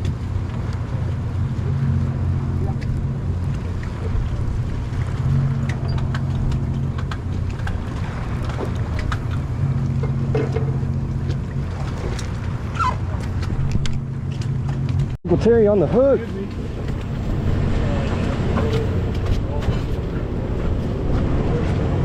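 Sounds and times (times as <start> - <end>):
boat engine humming: 0.0 - 22.0
wind: 0.0 - 22.0.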